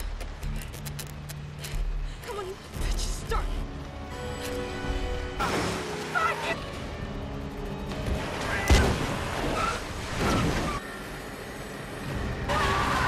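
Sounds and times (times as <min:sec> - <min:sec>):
tense film music: 0:00.0 - 0:13.0.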